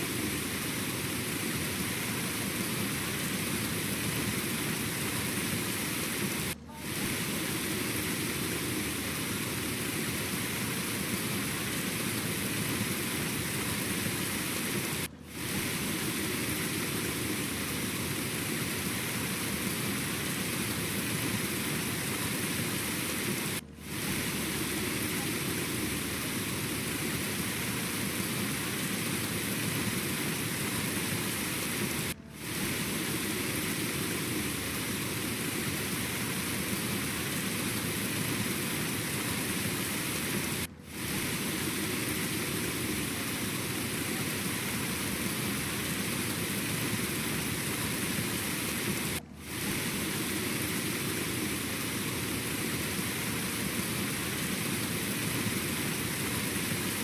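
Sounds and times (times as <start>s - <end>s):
steady rushing noise: 0.0s - 57.0s.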